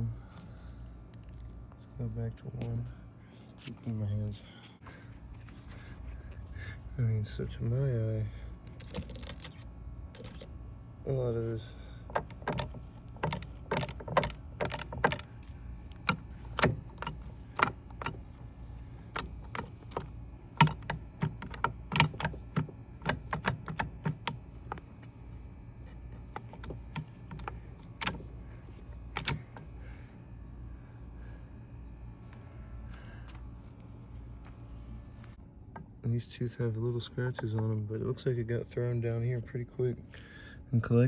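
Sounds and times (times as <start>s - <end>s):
low steady hum: 0.0s - 41.0s
metal parts clinking: 8.6s - 10.6s.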